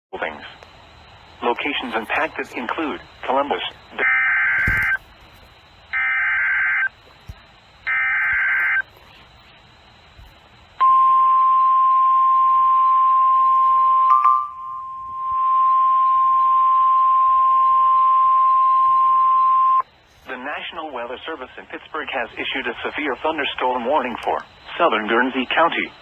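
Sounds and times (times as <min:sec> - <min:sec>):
screechy data bursts: 0:01.4 - 0:07.0, 0:07.8 - 0:09.3
single-pitch warning alarm tone: 0:04.0 - 0:05.1, 0:05.9 - 0:07.0, 0:07.8 - 0:08.9, 0:10.8 - 0:19.8.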